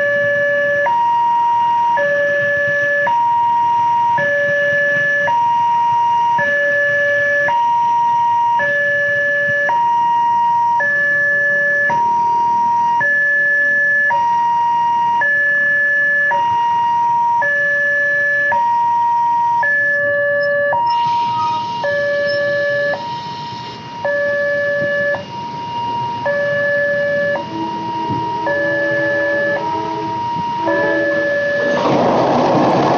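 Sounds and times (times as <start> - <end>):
two-tone crossing alarm: 0.0 - 32.9
low steady horn tone: 26.2 - 31.9.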